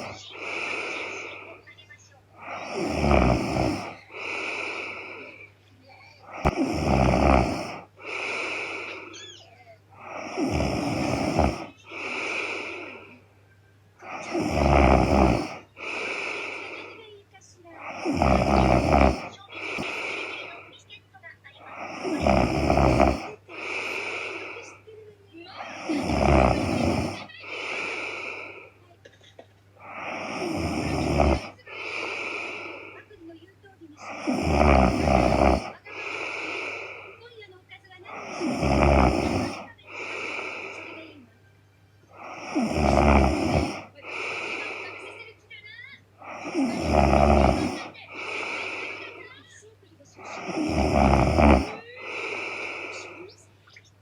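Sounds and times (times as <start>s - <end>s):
quiet breath: 0.0s - 1.8s, 2.4s - 6.7s, 7.4s - 13.4s, 15.2s - 20.9s, 23.1s - 26.0s, 35.2s - 38.4s, 39.3s - 41.4s, 47.6s - 50.6s, 51.6s - 53.6s
woman snoring: 0.0s - 13.2s, 14.0s - 17.1s, 17.7s - 20.7s, 21.6s - 28.8s, 29.8s - 33.1s, 34.0s - 37.3s, 38.0s - 41.3s, 42.1s - 49.6s, 50.2s - 53.6s.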